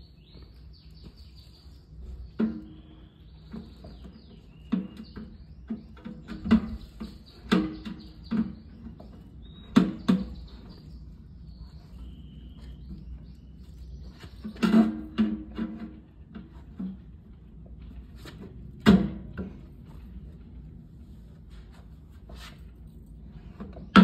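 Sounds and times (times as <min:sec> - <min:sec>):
bird chirps: 0:00.0 - 0:14.7
parts knocking and clunking: 0:02.0 - 0:11.1, 0:12.5 - 0:20.8, 0:23.4 - 0:24.0.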